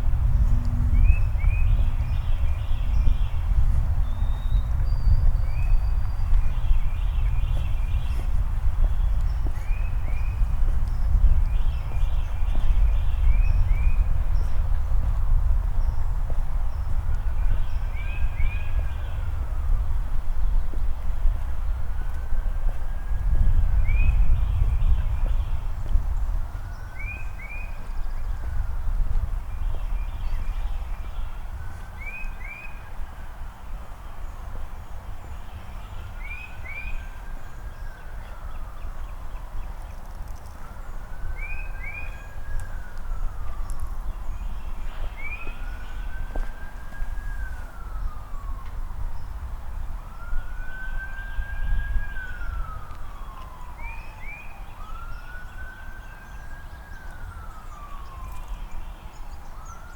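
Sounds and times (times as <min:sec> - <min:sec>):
siren wailing: 0:00.0 - 0:02.3, 0:45.1 - 0:59.9.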